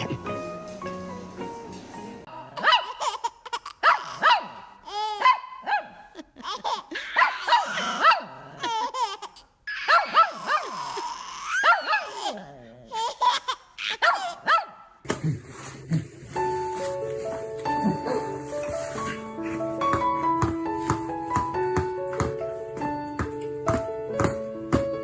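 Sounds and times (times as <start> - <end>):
dog barking: 2.3 - 3.0, 3.8 - 6.2, 7.0 - 8.6, 9.8 - 10.8, 11.5 - 12.4, 13.9 - 15.0
baby laughing and squealing: 2.6 - 5.3, 6.1 - 14.5.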